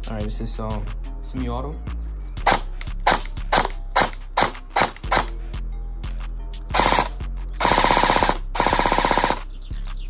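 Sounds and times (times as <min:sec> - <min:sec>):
airsoft gun firing: 0:02.5 - 0:05.4, 0:06.7 - 0:09.4.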